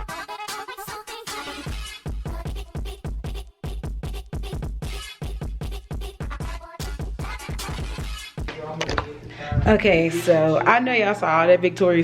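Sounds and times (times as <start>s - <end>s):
electronic dance music: 0.0s - 8.5s.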